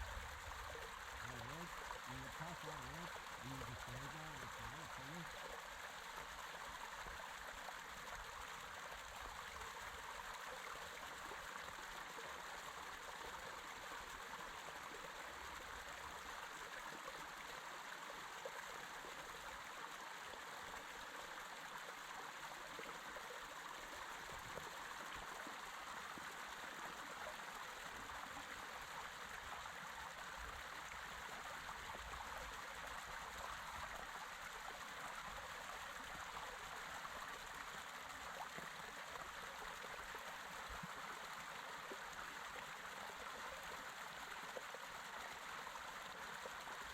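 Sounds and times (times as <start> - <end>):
creek water rushing: 0.0 - 46.9.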